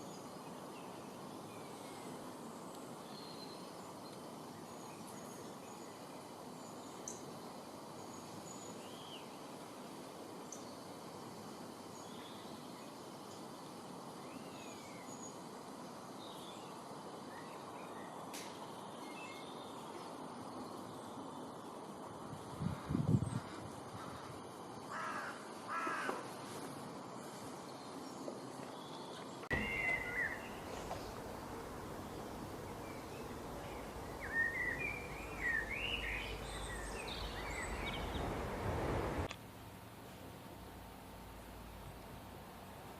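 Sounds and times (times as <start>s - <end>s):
steady background hiss: 0.0s - 42.9s
bird chirps and whistles: 29.5s - 30.9s.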